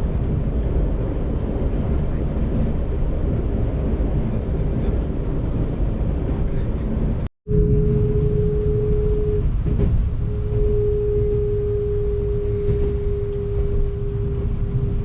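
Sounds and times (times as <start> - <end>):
train carriage rumble: 0.0 - 15.0
mid-pitched whine: 7.5 - 15.0.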